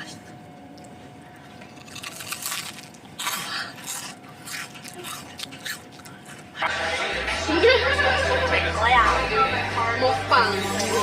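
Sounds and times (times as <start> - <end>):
food crunching: 0.6 - 6.6.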